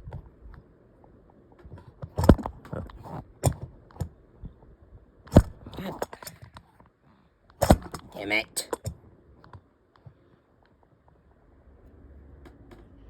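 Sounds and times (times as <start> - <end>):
phone being handled: 1.6 - 4.6, 7.5 - 10.1.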